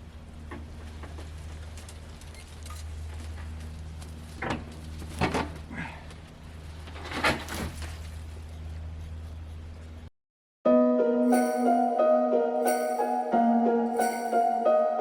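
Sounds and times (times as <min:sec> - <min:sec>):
engine running with low hum: 0:00.0 - 0:10.1.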